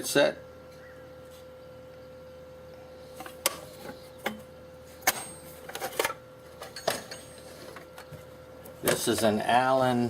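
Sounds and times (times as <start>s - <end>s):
tools clacking in drawer: 5.0s - 7.8s.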